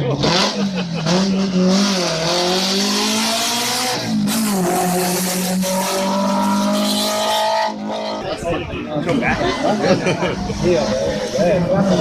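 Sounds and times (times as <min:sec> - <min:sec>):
racing car engine accelerating: 0:00.0 - 0:08.4.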